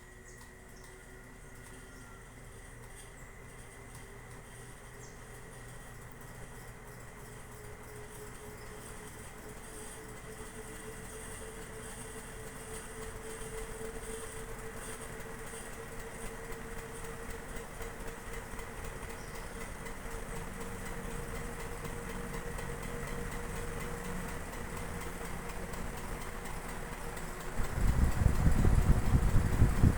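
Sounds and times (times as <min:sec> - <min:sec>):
ceiling fan motor hum: 0:00.0 - 0:29.9
constant rush of air noise: 0:26.4 - 0:29.9.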